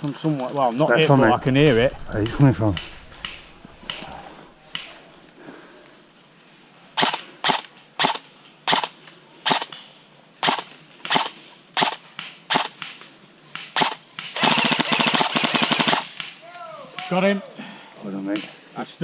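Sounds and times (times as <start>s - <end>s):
airsoft gun shots: 1.4s - 5.2s, 13.7s - 16.4s.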